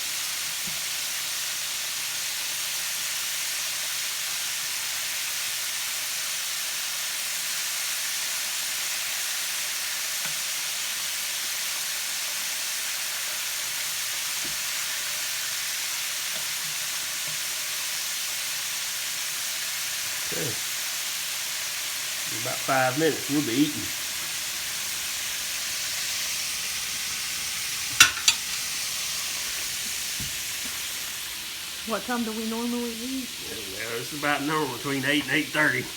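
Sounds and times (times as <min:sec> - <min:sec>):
chicken frying sizzle: 0:00.0 - 0:35.9
grease popping: 0:21.2 - 0:35.9.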